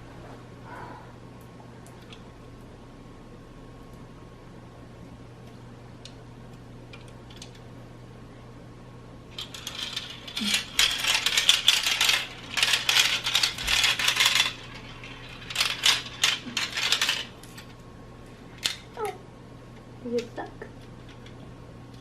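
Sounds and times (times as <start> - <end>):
marbles clattering down plastic track: 9.4 - 17.4.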